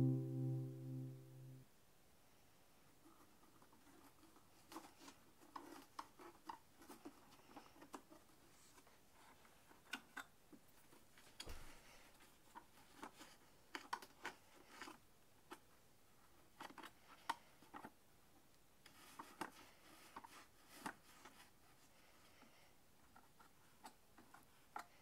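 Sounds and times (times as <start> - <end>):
faint clicks and taps: 22.2 - 25.0.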